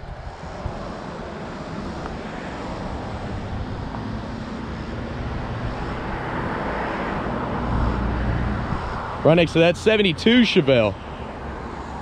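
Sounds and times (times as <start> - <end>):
wind on microphone: 0.0 - 9.2
low traffic hum: 0.0 - 12.0.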